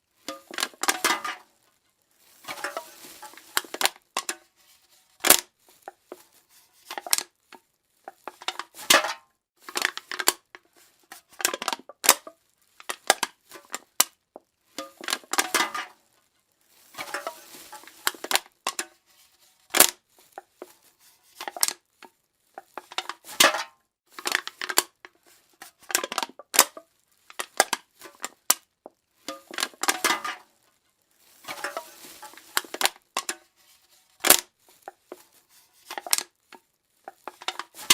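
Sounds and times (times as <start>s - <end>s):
soda can crushed by hand: 0.2s - 1.5s, 2.4s - 4.5s, 5.2s - 6.2s, 6.8s - 14.2s, 14.8s - 16.0s, 16.9s - 19.0s, 19.7s - 20.8s, 21.4s - 21.8s, 22.6s - 30.5s, 31.4s - 33.5s, 34.2s - 35.2s, 35.8s - 37.9s.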